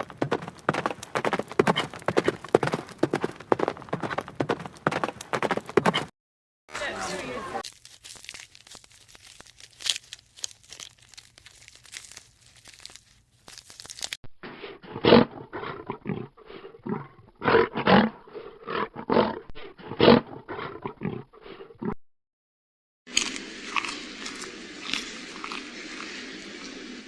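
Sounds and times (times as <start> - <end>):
faint crackling and rustling: 7.6 - 14.2.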